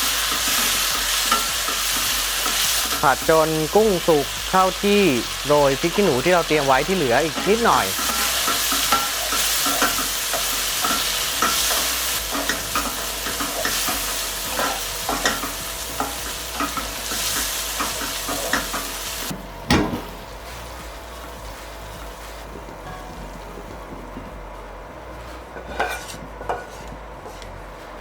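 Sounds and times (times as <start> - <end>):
spatula scraping and clacking on pan: 0.0 - 3.0, 7.3 - 19.4, 25.5 - 27.6
shrimp sizzling in hot oil: 0.0 - 22.9.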